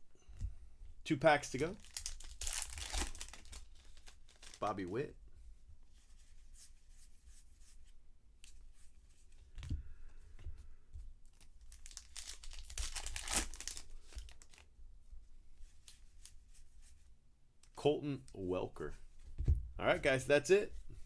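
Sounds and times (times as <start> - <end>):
wrapper tearing and crinkling: 1.7 - 4.7, 11.3 - 14.6
dull thump: 19.3 - 19.8.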